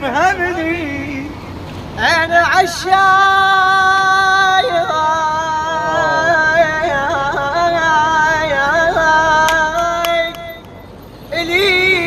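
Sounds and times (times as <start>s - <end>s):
person singing: 5.5s - 9.9s.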